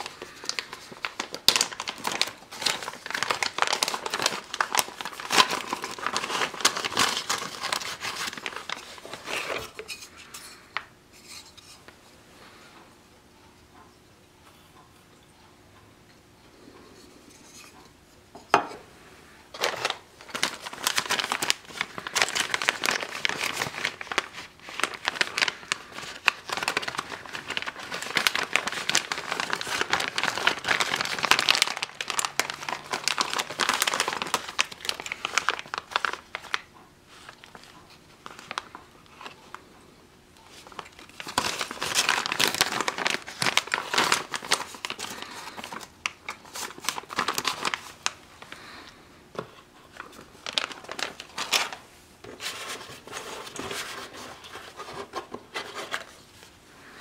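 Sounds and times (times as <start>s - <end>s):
packaging crinkling and tearing: 0.0s - 9.9s, 19.5s - 39.6s, 40.5s - 48.9s, 49.9s - 56.5s.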